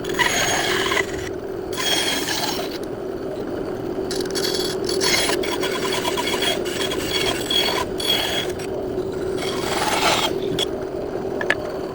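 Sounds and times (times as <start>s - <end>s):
saw blade cutting wood: 0.0s - 2.8s, 4.1s - 10.7s
bandsaw motor hum: 0.0s - 11.9s.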